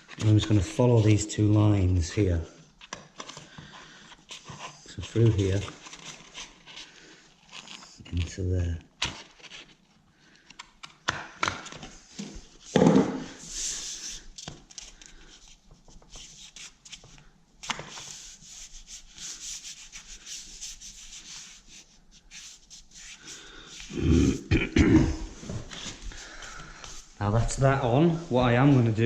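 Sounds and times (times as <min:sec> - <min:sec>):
paper rustling: 0:00.0 - 0:10.0
paper rubbing on wall: 0:13.3 - 0:14.3, 0:15.4 - 0:24.4.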